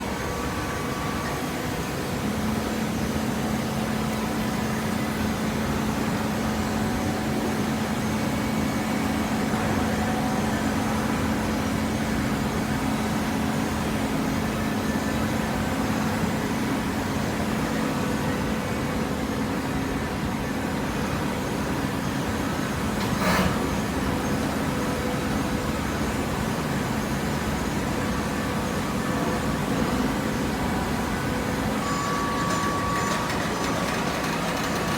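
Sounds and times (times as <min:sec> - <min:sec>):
hydraulic baler motor humming: 0:28.8 - 0:34.9.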